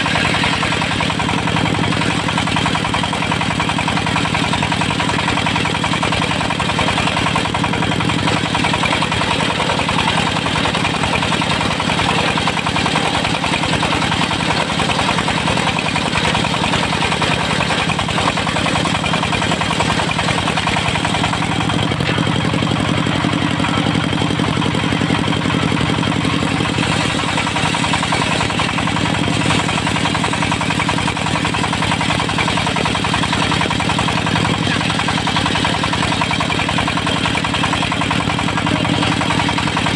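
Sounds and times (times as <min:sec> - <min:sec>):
sawmill diesel engine running: 0:00.0 - 0:39.9.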